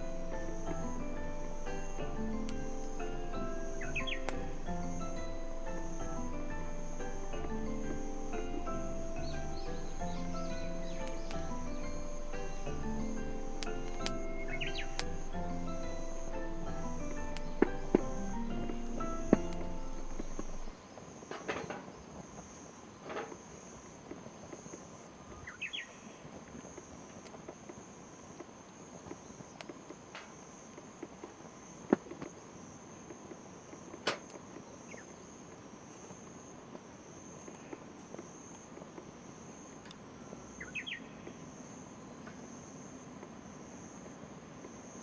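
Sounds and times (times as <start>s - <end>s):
rising chirps: 0.0s - 20.8s
insect chirring: 0.0s - 21.4s
sharp snaps: 0.6s - 4.7s, 5.7s - 20.7s.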